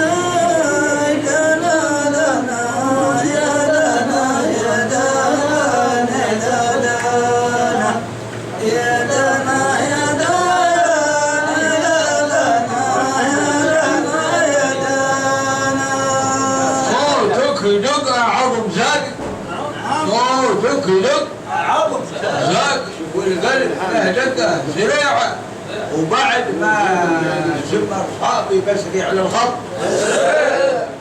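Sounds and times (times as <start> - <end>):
men singing: 0.0 - 18.9, 29.6 - 31.0.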